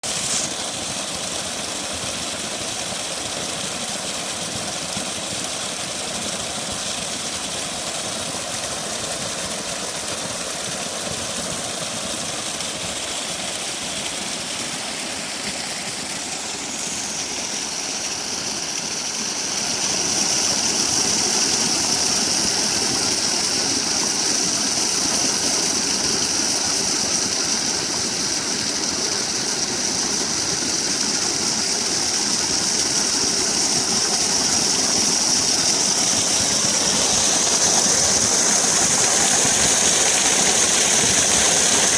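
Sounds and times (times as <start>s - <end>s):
waterfall rushing: 0.0s - 0.6s, 13.3s - 41.9s.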